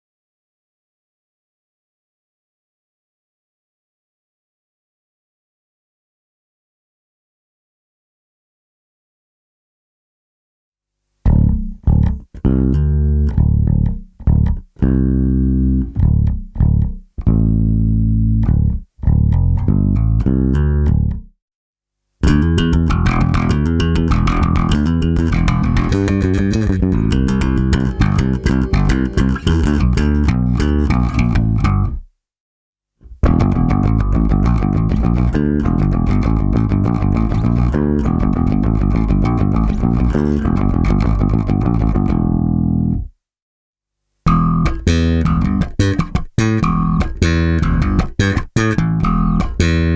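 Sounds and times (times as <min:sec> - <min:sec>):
bass guitar notes: 0:11.3 - 0:21.3, 0:22.2 - 0:32.1, 0:33.0 - 0:43.1, 0:44.3 - 0:49.9.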